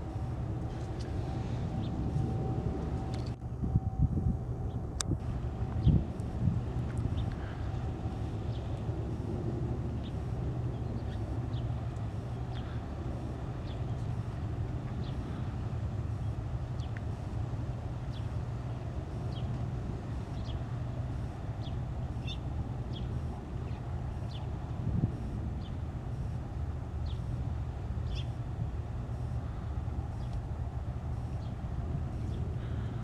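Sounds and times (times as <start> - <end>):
distant traffic rumble: 0.0 - 33.0
bird chirps: 28.0 - 28.4.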